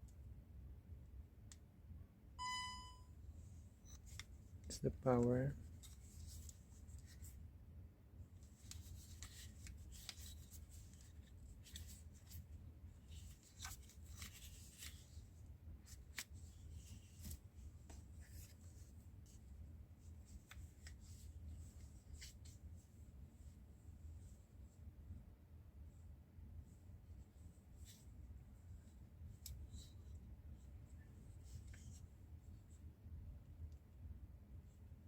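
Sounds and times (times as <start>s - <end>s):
low room hum: 0.0s - 35.0s.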